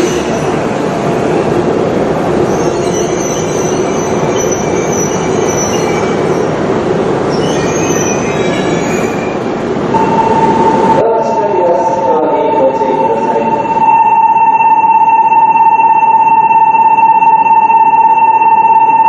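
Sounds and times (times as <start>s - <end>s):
train rumbling on rails: 0.0s - 14.5s.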